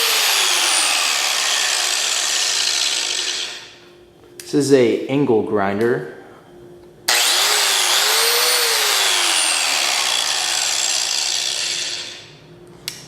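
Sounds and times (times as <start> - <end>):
angle grinder whining: 0.0 - 3.8, 7.1 - 12.4.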